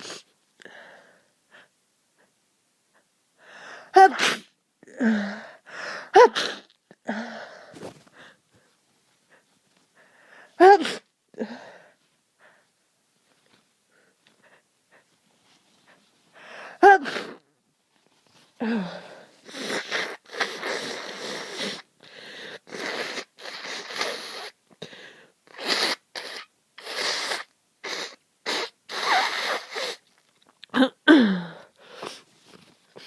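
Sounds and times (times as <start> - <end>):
person blowing nose: 0.0 - 0.3, 4.0 - 5.1, 6.1 - 6.8, 16.8 - 17.4, 19.4 - 24.6, 25.5 - 30.2
person sniffling: 0.0 - 1.7, 30.8 - 32.3
loud sneeze: 3.9 - 4.6, 6.1 - 6.8, 10.6 - 11.1, 16.8 - 17.4, 22.7 - 24.6, 25.5 - 30.0.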